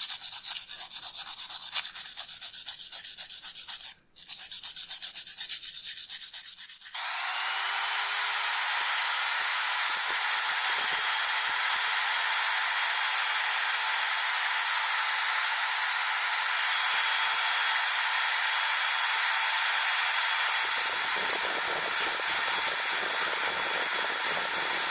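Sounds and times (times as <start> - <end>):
rubbing strokes: 0.0 - 7.0
small electric machine hissing: 6.8 - 24.9.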